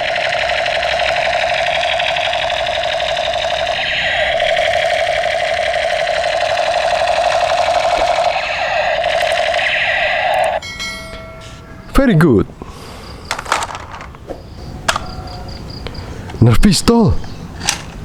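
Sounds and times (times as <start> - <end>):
toy gun buzzy rattle: 0.0 - 10.6, 13.3 - 14.2.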